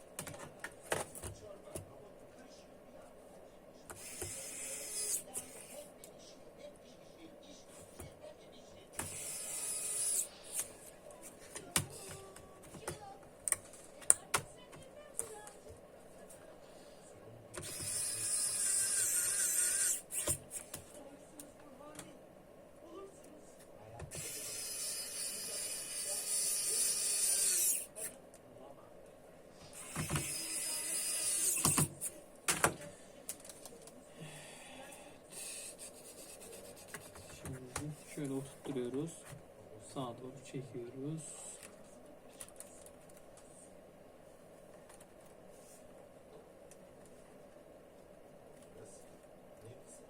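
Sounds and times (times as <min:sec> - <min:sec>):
electric screwdriver whirring: 0:04.0 - 0:05.6, 0:09.0 - 0:10.7, 0:17.6 - 0:20.5, 0:24.1 - 0:27.9, 0:29.8 - 0:32.1.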